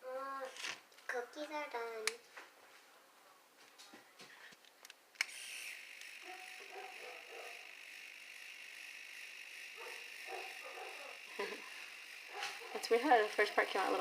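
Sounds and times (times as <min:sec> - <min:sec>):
high geared motor whir: 0:05.2 - 0:14.0.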